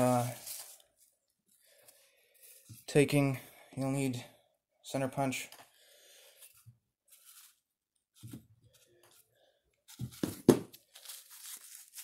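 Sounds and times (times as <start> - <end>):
paper towel rustling and tearing: 0.0 - 1.1, 10.8 - 12.0.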